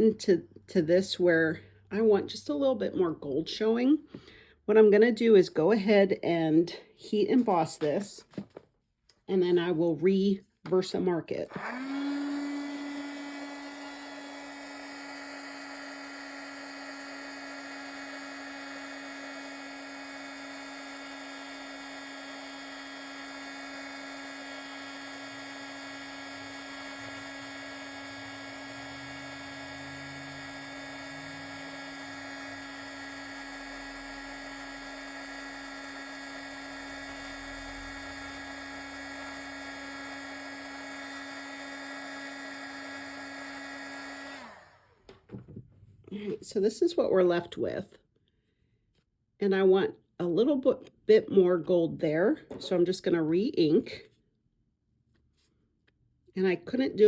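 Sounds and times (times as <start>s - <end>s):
heat tool motor whine: 11.5s - 45.1s.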